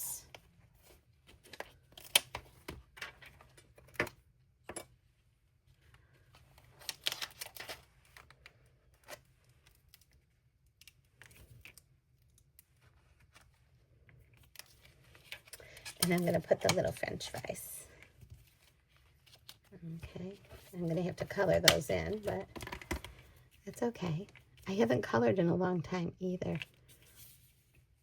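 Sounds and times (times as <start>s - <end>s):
paper rustling: 5.9s - 10.1s.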